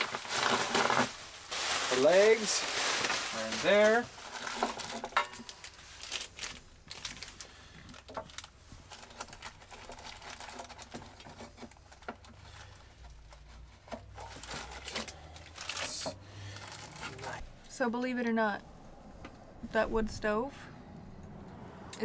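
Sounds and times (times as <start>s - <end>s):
packaging crinkling: 0.0s - 17.4s.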